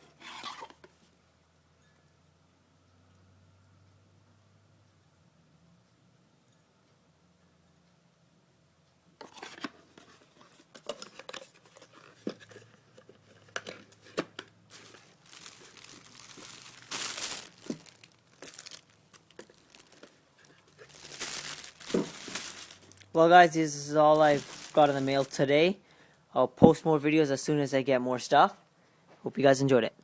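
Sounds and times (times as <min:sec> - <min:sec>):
wrapping crinkling and tearing: 0:00.2 - 0:00.8, 0:14.7 - 0:25.6.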